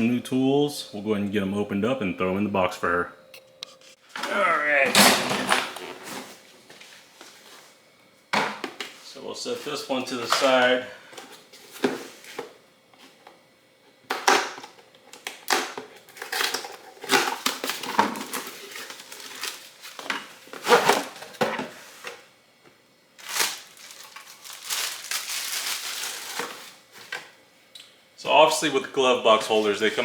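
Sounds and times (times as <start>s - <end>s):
cardboard and plastic crinkling: 14.4s - 22.2s, 23.2s - 27.3s.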